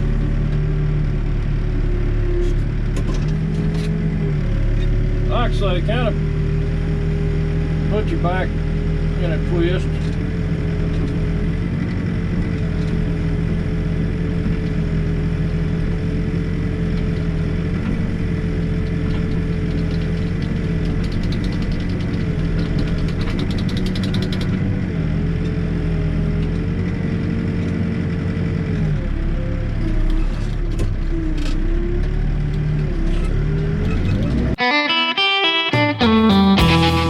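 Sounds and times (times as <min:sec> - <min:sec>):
backhoe engine running: 0:00.0 - 0:37.0
engine whine: 0:00.0 - 0:37.0
fast rattle of clicks: 0:18.8 - 0:24.6.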